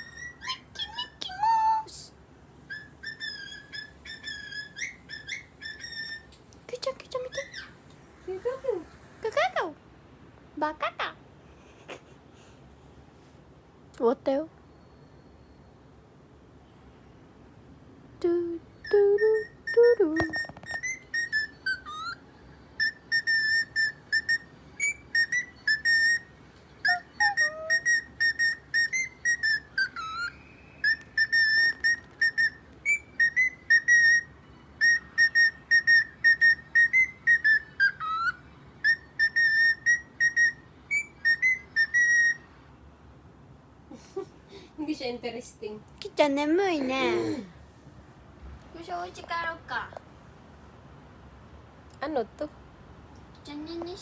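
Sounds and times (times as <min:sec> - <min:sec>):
pet bird whistling: 0:00.0 - 0:02.0, 0:02.7 - 0:07.8, 0:18.5 - 0:42.5.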